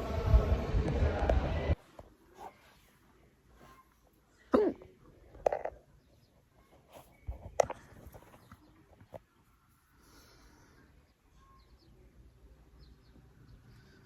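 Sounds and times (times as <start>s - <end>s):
person hiccuping: 4.5s - 4.9s.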